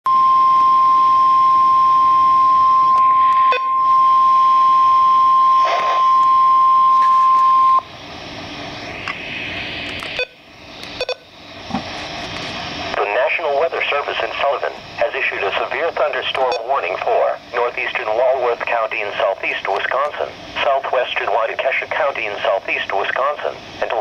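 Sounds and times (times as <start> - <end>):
steady single-pitch alert tone: 0.1 - 7.9, 11.0 - 11.3
radio hiss: 5.6 - 6.0, 8.5 - 10.2, 10.8 - 24.0.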